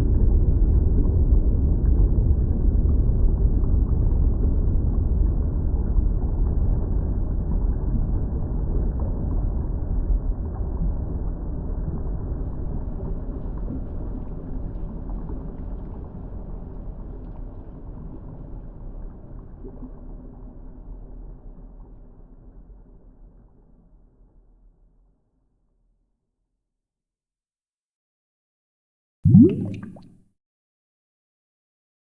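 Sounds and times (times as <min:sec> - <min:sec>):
water bubbling with low rumble: 0:00.2 - 0:22.8, 0:29.3 - 0:30.2
faint high pops: 0:29.3 - 0:30.1.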